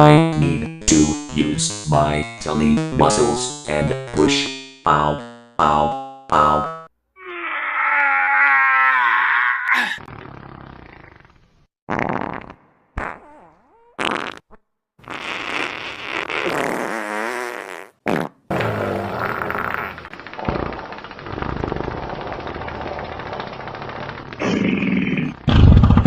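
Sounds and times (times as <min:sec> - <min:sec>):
fart sounds: 0:09.8 - 0:26.0.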